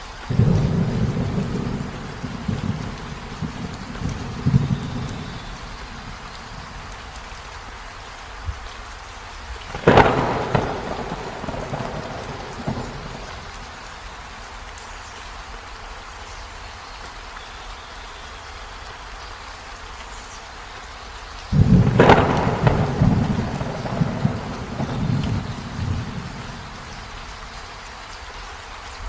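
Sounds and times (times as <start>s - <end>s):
heavy rain hissing: 0.0s - 29.0s
thunderclap rumbling: 0.3s - 7.2s, 9.7s - 13.9s, 21.6s - 27.6s.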